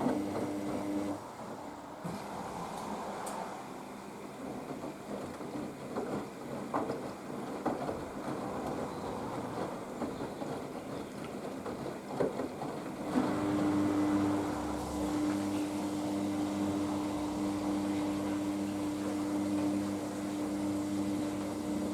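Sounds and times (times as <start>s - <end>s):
laundry tumbling knocks: 4.4s - 13.8s
motor hum: 13.1s - 21.9s.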